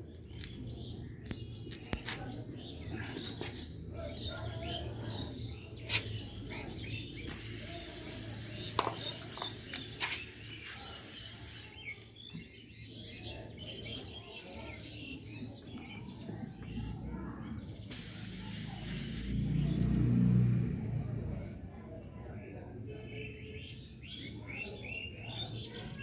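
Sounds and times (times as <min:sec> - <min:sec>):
birds chirping faintly: 0:00.0 - 0:20.1
air hissing out of tyre: 0:05.9 - 0:11.8, 0:17.9 - 0:19.8.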